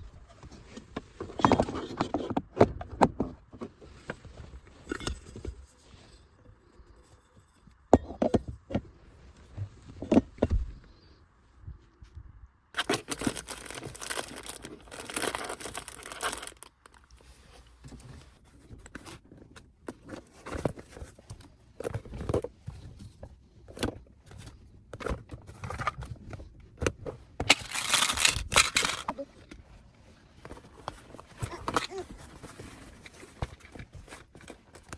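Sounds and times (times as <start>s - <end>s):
packaging crinkling and rustling: 12.8s - 17.1s, 27.5s - 29.1s
knocks and scrapes: 12.8s - 19.2s, 27.4s - 29.2s.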